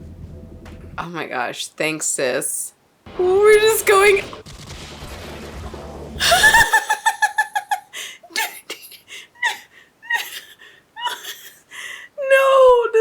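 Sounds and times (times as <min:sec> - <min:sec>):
woman laughing hard: 0:06.2 - 0:08.7, 0:09.4 - 0:11.6.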